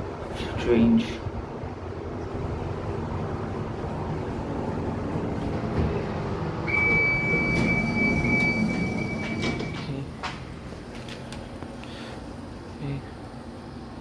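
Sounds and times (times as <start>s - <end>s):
lift mechanical hum and rumble: 0.0s - 14.0s
high-pitched electronic beep: 6.7s - 9.8s.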